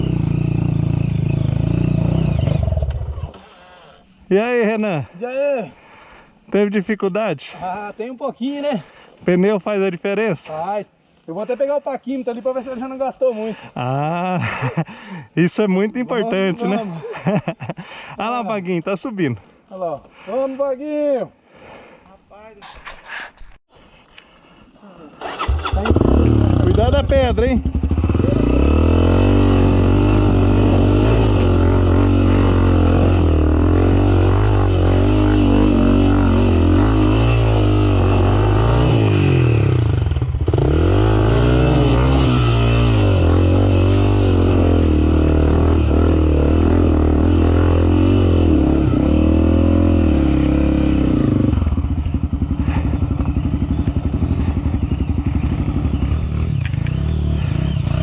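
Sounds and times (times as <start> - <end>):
dirt bike engine revving: 0.0 - 4.1, 25.2 - 58.0.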